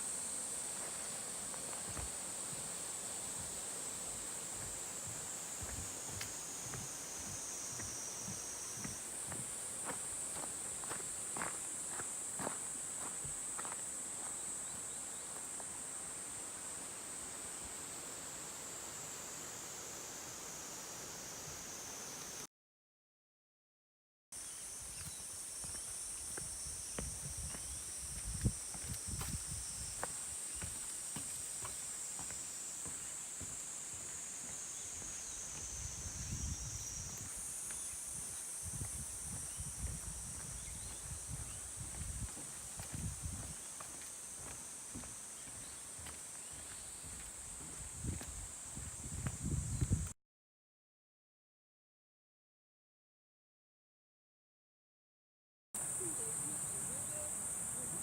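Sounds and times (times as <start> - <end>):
insect chorus shrill drone: 0.0 - 22.4, 24.4 - 49.9
faint footstep: 0.8 - 14.3, 25.0 - 36.4, 38.7 - 50.0.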